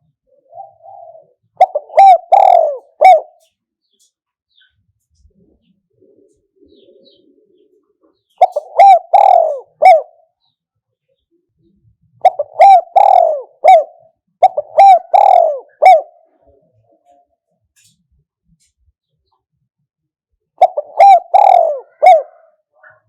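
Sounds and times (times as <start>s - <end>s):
dove cooing: 0.0s - 3.6s, 5.2s - 10.6s, 11.6s - 17.9s, 20.6s - 23.0s.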